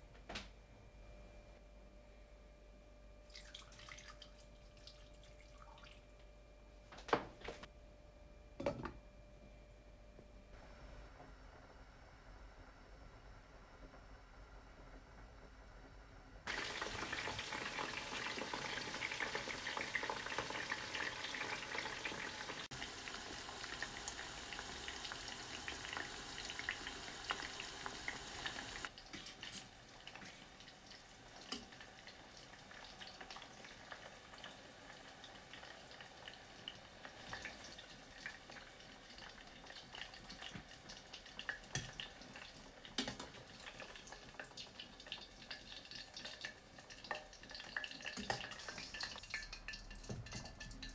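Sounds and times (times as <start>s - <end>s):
food sizzling in hot oil: 16.5s - 50.9s.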